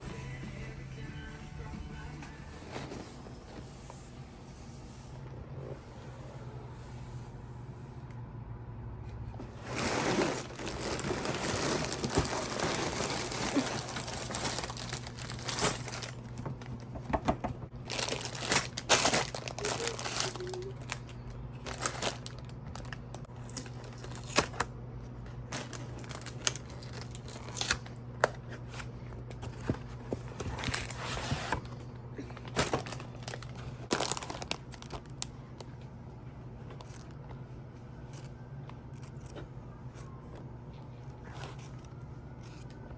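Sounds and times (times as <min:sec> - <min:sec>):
steady low hum: 0:00.0 - 0:42.9
crinkling and rustling: 0:09.2 - 0:24.6, 0:25.2 - 0:36.0.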